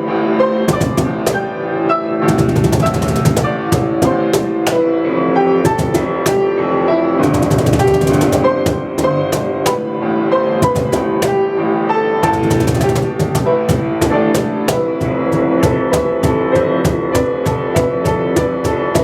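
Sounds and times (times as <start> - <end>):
piano chords and runs: 0.0 - 19.0
sharp drum hits: 0.7 - 1.5, 2.3 - 4.9, 5.6 - 6.5, 7.2 - 9.8, 10.6 - 11.4, 12.2 - 19.0.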